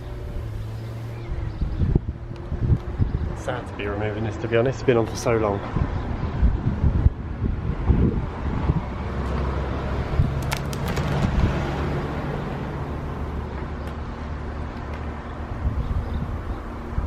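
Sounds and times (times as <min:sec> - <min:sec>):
vehicle engine humming: 0:00.0 - 0:17.0.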